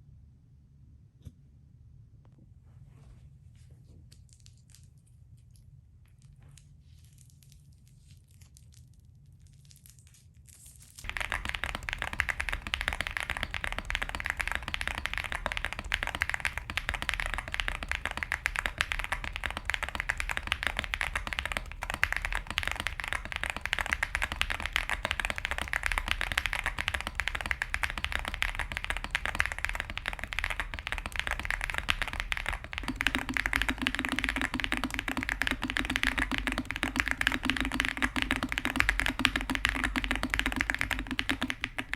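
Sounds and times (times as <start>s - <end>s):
mechanical keyboard typing: 11.0s - 41.9s.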